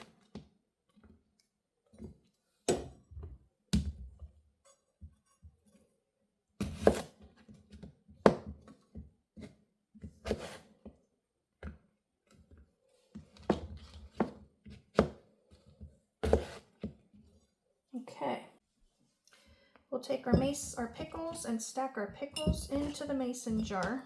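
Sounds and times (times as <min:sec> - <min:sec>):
knife slicing onto cutting board: 0:06.7 - 0:07.1, 0:10.3 - 0:10.6, 0:16.2 - 0:16.7.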